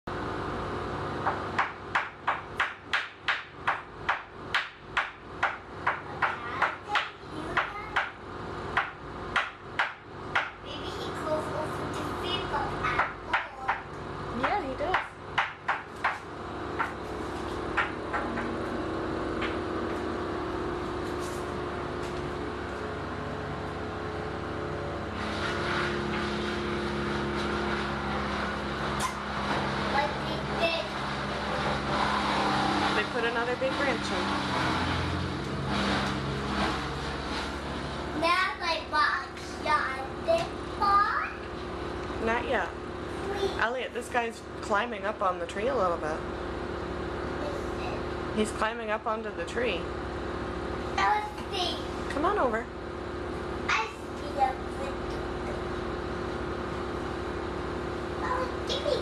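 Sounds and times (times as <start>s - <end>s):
steady low hum: 0.1s - 59.0s
wood chipper engine running: 0.1s - 59.0s
harsh chipping noise: 1.2s - 10.6s
rapid sharp knocks: 1.2s - 10.6s, 13.0s - 17.0s.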